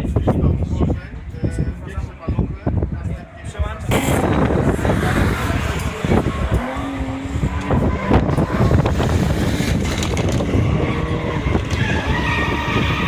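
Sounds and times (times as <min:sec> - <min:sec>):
racing car engines revving: 0:03.5 - 0:13.0
sharp cracks: 0:03.9 - 0:06.8.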